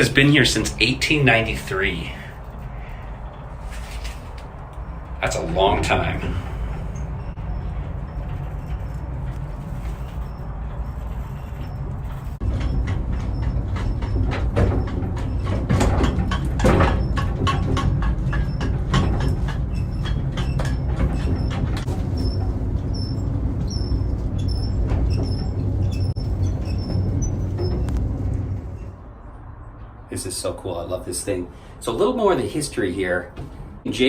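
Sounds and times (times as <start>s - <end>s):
short high squeaks: 0.0s - 15.5s, 18.3s - 29.0s
rattling and clicking: 0.0s - 29.0s
funicular car rumbling on track: 0.0s - 31.2s.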